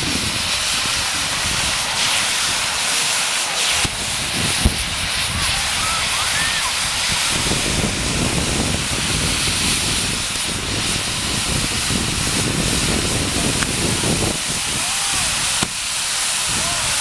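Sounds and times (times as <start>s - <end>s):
firework hissing: 0.0s - 17.0s
sharp crack: 1.6s - 4.0s, 13.4s - 14.3s, 14.9s - 16.4s.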